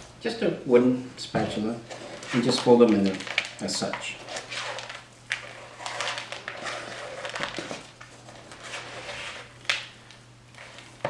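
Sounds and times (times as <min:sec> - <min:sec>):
spatula scraping cookie dough: 0:01.9 - 0:03.1, 0:04.0 - 0:09.6, 0:10.5 - 0:11.0.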